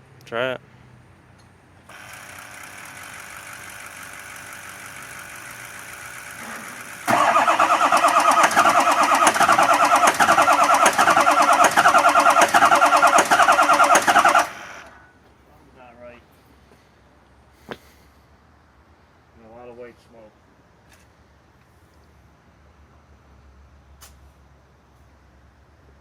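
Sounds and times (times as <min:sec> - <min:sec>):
diesel engine turning over: 0:01.9 - 0:15.1.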